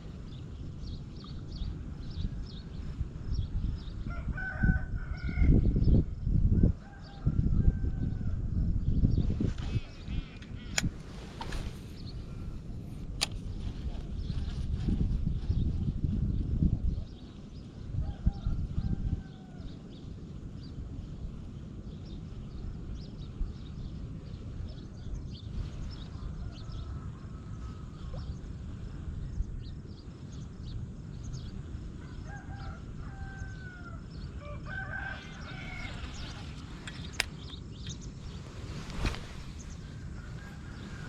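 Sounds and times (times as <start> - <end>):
distant rooster crowing: 4.1 - 5.7, 6.6 - 8.4, 32.0 - 36.4, 40.0 - 41.0.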